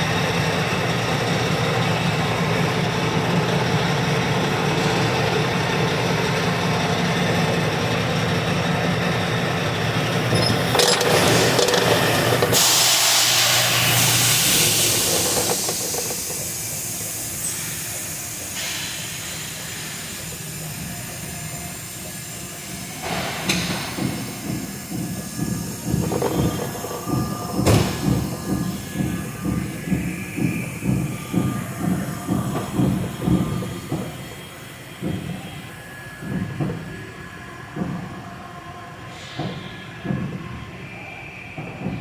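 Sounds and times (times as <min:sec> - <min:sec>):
train wheel clacks: 0:00.0 - 0:38.3
train rushing hiss: 0:08.6 - 0:42.0.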